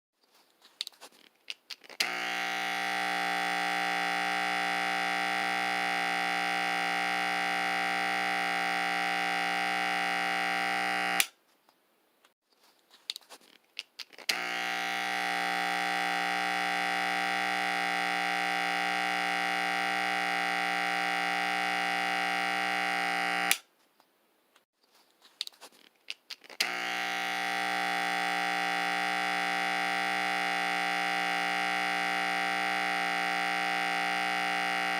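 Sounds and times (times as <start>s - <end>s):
electric clippers buzzing: 1.9s - 11.3s, 14.2s - 23.7s, 26.5s - 34.9s.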